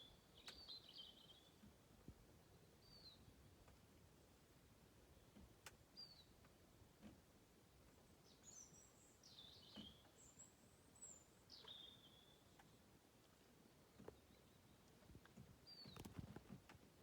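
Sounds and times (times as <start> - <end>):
faint bird chirps: 15.7 - 16.4.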